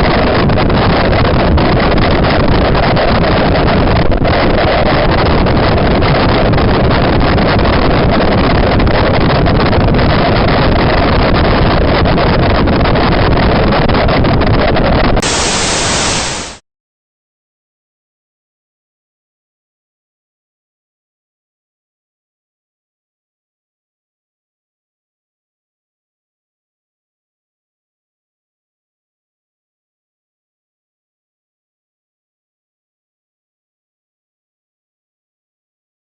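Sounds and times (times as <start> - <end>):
static hiss: 15.2 - 16.6.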